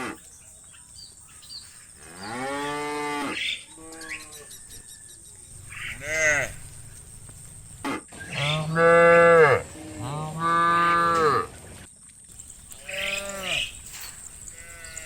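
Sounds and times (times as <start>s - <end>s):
cows mooing: 2.0s - 4.6s, 5.7s - 6.9s, 8.3s - 11.5s, 12.7s - 15.0s.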